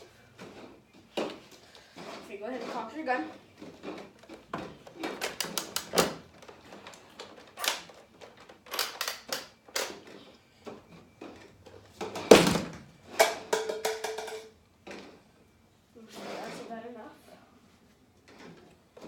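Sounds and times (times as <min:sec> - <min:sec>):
plastic toy blaster clicks: 0:07.6 - 0:07.9, 0:08.7 - 0:09.9.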